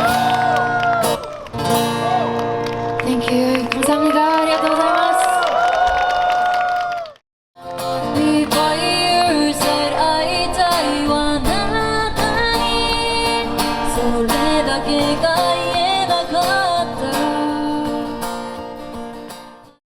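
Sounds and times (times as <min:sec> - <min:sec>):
strummed acoustic guitar music: 0:00.0 - 0:03.6, 0:07.6 - 0:19.8.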